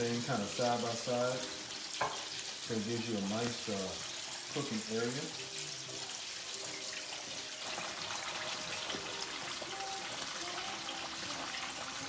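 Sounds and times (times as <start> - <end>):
fish frying in hot oil: 0.0 - 12.0.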